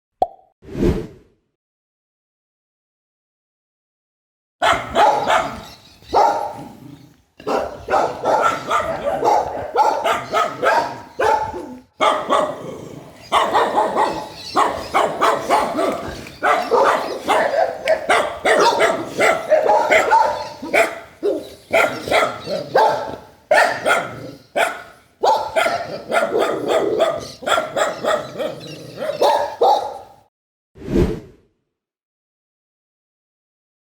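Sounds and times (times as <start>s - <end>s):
dogs barking: 4.6s - 30.3s.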